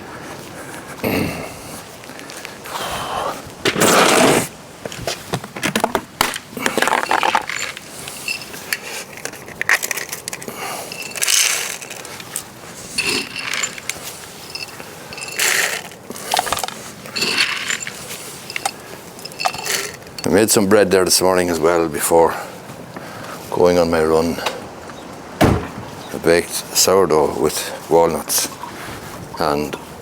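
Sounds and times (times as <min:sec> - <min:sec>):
bird feeder rattling and clinking: 0:06.6 - 0:20.4.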